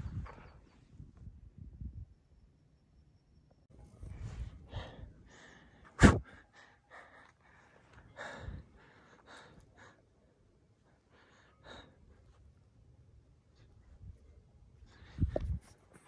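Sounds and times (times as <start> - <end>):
person breathing hard: 4.1 - 10.1.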